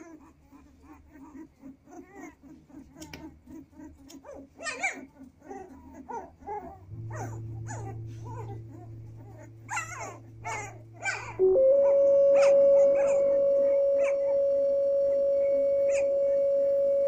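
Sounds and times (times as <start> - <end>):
puppies whimpering and yelping: 0.0 - 14.4, 15.1 - 17.0
steady low hum: 6.4 - 17.0.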